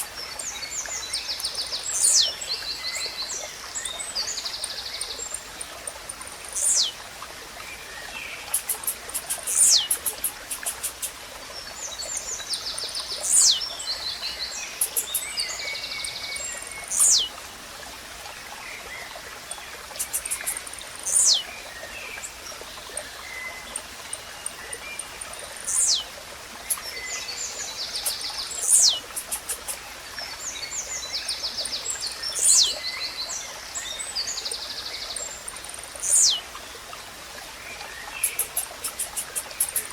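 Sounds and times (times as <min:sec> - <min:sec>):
steady watery hiss: 0:00.0 - 0:39.9
other birds chirping: 0:05.4 - 0:07.0, 0:08.3 - 0:11.2, 0:12.8 - 0:13.6, 0:14.7 - 0:17.3, 0:19.9 - 0:21.5, 0:23.6 - 0:26.9, 0:27.9 - 0:29.8, 0:32.3 - 0:32.7, 0:35.5 - 0:36.4, 0:38.2 - 0:39.9.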